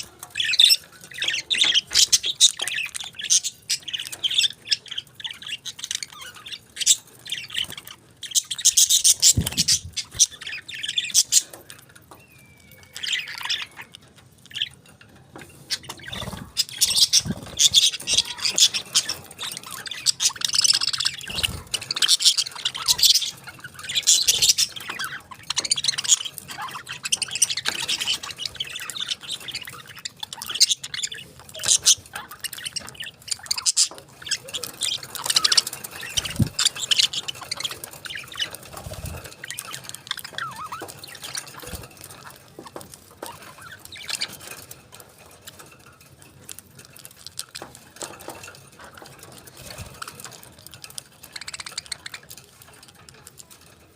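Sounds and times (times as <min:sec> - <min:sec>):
parakeets chirping and squawking: 0:00.0 - 0:53.9.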